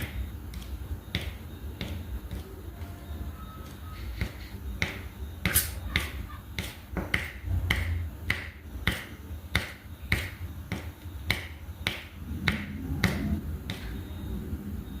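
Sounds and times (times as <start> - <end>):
low hum: 12.1 - 15.0.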